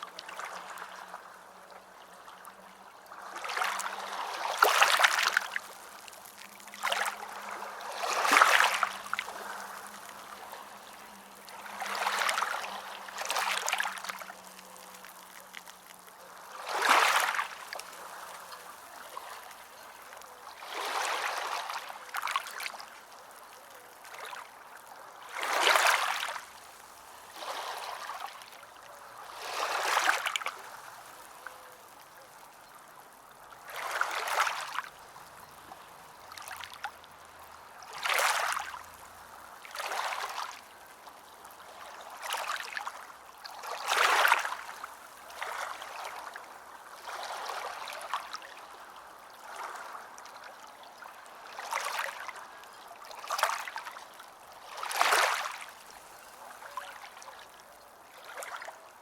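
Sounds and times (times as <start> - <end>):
running water rushing: 0.0 - 48.8
water splashing in surges: 3.1 - 40.6.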